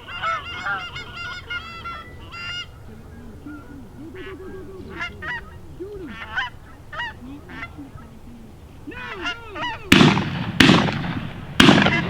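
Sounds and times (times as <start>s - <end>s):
geese honking: 0.0s - 12.0s
shotgun blasts: 9.8s - 12.0s.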